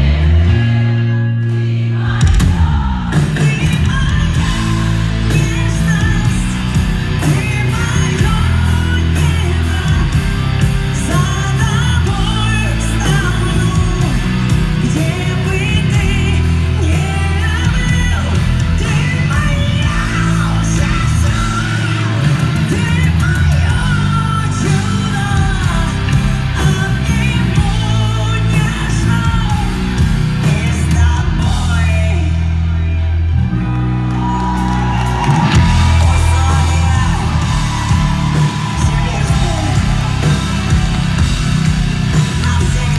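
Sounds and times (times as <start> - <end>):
heavy bass line: 0.0 - 42.9
live rock band with singing: 0.0 - 42.9.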